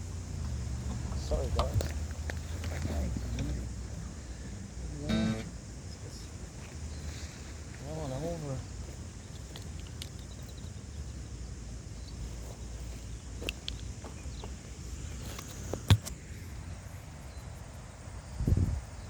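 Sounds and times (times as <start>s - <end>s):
sharp knock: 5.1s - 5.6s
wind rumbling on microphone: 18.2s - 19.0s.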